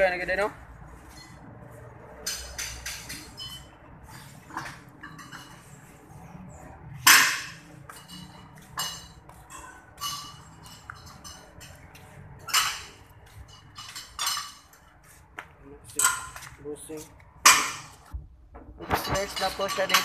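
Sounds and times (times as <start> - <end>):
hand tools clinking on metal: 2.2 - 3.8, 7.1 - 15.0, 15.9 - 16.5, 18.9 - 20.0.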